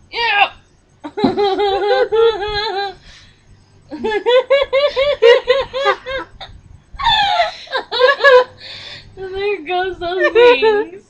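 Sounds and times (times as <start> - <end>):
girl laughing hard: 1.1 - 3.0, 3.9 - 8.6.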